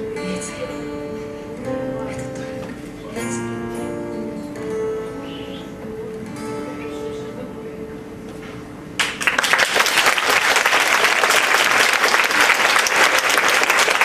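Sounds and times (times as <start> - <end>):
held musical notes: 0.0 - 9.0
audience applause: 9.0 - 14.0.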